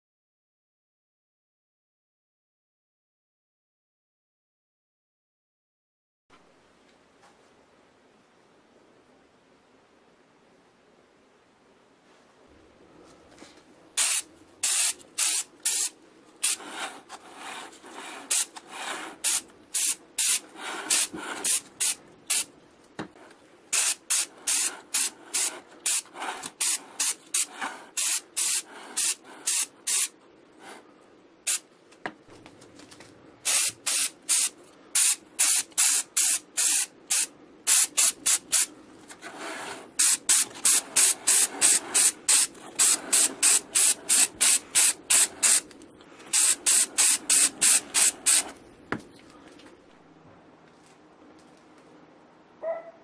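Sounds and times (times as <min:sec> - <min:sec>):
spray hissing in short bursts: 0:14.0 - 0:22.5, 0:23.7 - 0:30.1, 0:33.4 - 0:45.6, 0:46.3 - 0:48.6.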